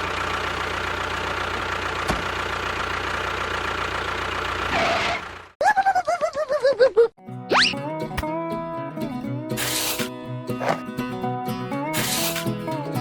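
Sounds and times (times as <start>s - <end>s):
engine idling: 0.0s - 5.6s.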